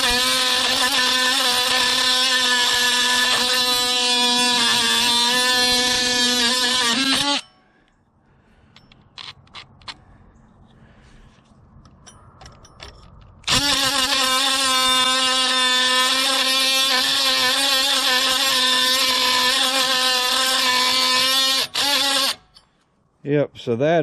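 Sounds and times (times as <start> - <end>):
oscillating multi-tool buzzing: 0.0 - 7.6, 13.4 - 22.6.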